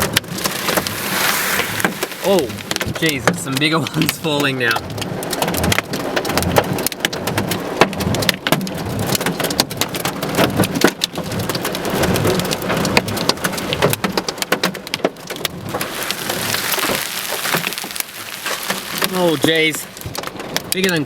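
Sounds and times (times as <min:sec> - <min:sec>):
hailstones clattering: 0:00.0 - 0:21.0
heavy rain hiss: 0:00.2 - 0:04.8, 0:15.7 - 0:21.0.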